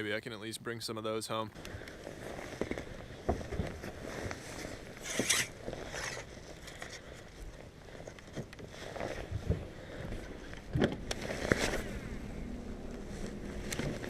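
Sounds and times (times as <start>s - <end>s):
zip-like scraping rustle: 2.0s - 7.0s, 8.7s - 9.4s, 11.2s - 12.1s.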